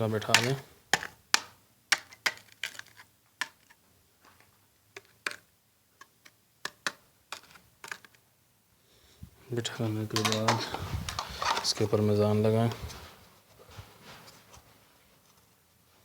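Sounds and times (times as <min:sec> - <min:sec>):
switch box being tapped into cement: 0:00.2 - 0:02.5, 0:06.0 - 0:08.2.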